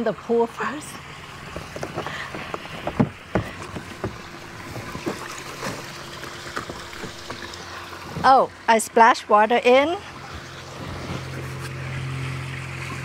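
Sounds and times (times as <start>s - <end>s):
kayak hull knocks and taps: 1.4s - 7.6s.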